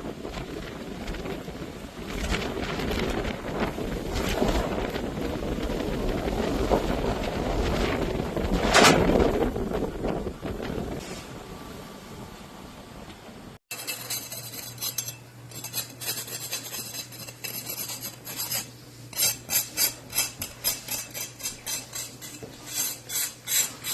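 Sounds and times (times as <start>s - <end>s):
scraping strokes: 13.7s - 23.9s.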